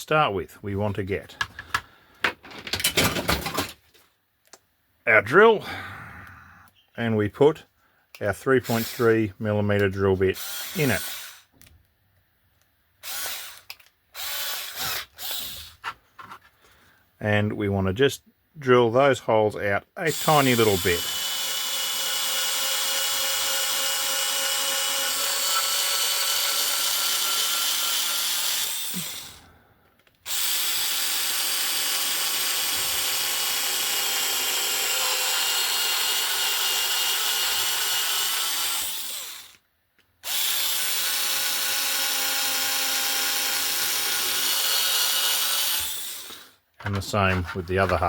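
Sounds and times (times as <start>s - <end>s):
cordless screwdriver drilling whine: 10.4s - 11.5s, 13.0s - 15.8s, 20.1s - 29.4s, 30.3s - 39.6s, 40.2s - 47.0s.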